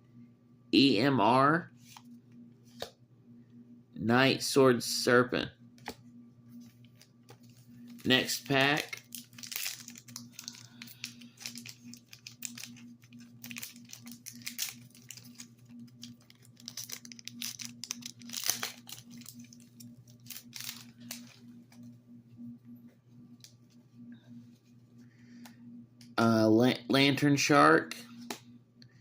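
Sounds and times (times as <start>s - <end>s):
steady low hum: 0.0s - 29.0s
foil wrapper tearing and crinkling: 8.0s - 21.2s.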